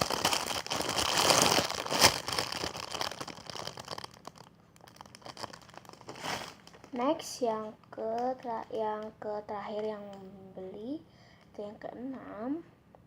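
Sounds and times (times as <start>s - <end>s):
foam toy crinkling and rustling: 0.0s - 7.2s.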